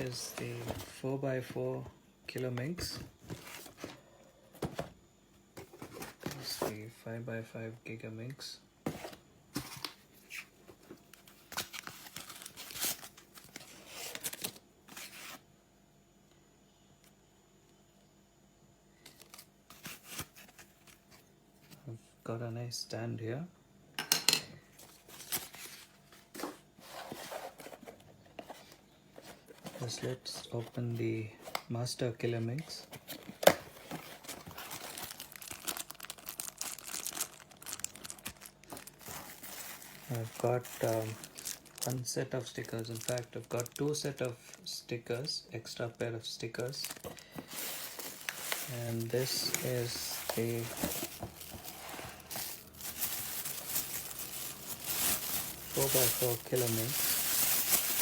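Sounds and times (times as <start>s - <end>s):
packaging rustling and crinkling: 0.0s - 4.0s, 5.6s - 6.8s, 8.9s - 15.4s, 19.0s - 21.3s, 24.8s - 31.7s, 32.5s - 44.7s, 46.5s - 58.0s.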